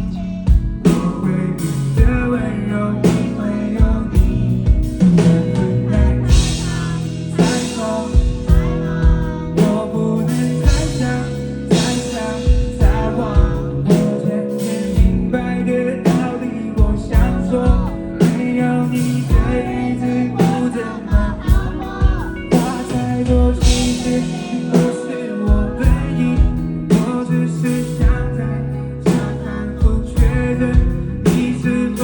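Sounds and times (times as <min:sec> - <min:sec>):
lead vocal singing: 0:00.0 - 0:32.0
live band playing: 0:00.0 - 0:32.0.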